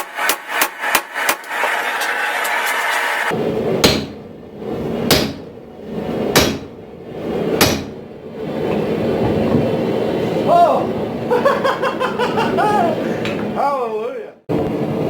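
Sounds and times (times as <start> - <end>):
hammer blows on steel: 3.8 - 4.2, 5.1 - 5.5, 6.3 - 6.8, 7.6 - 8.0.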